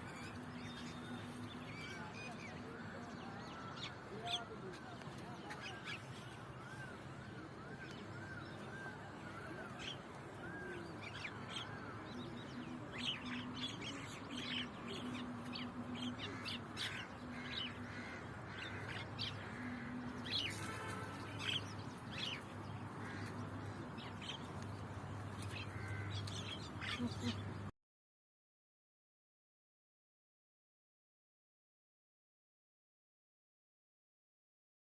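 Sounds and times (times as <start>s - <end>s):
birds calling: 0.0s - 27.7s
road traffic rumble: 0.0s - 27.7s.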